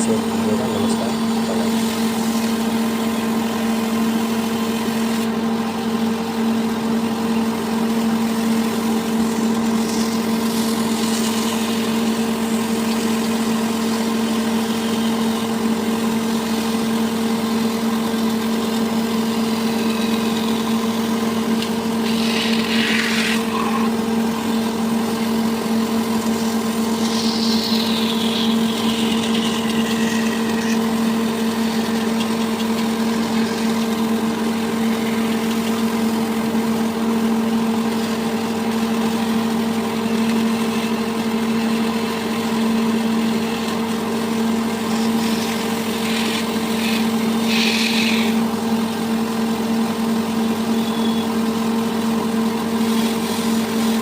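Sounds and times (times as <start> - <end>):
machine motor humming: 0.0 - 54.0.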